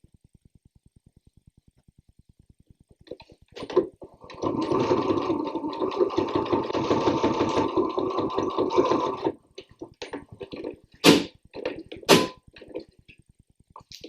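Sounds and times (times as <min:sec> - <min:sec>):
sewing machine stitching: 0:03.6 - 0:09.4
sharp knock: 0:12.1 - 0:12.4.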